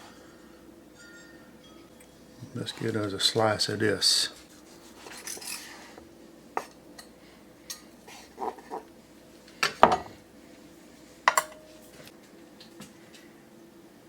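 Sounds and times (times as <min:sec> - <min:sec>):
cutlery clinking on a plate: 0:11.3 - 0:11.7.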